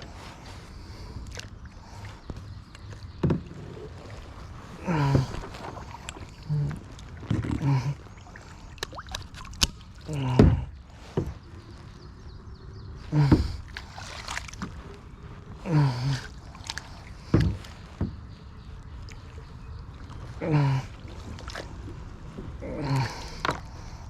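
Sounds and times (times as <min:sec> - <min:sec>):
kayak paddle strokes: 0:00.0 - 0:24.0
paddle knocking against hull: 0:02.8 - 0:11.5, 0:13.0 - 0:14.8, 0:16.1 - 0:18.3.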